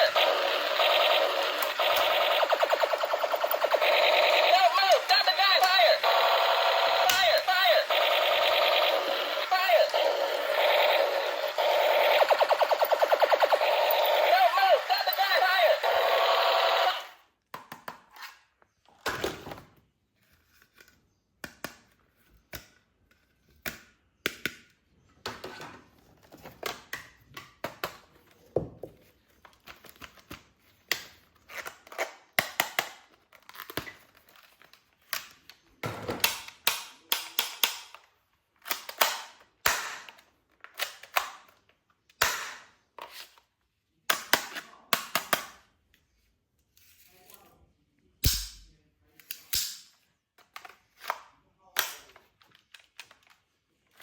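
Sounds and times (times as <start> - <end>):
plastic toy guns clicking: 0.0 - 17.8, 30.9 - 33.9, 36.2 - 42.7, 44.1 - 45.7, 48.2 - 53.4.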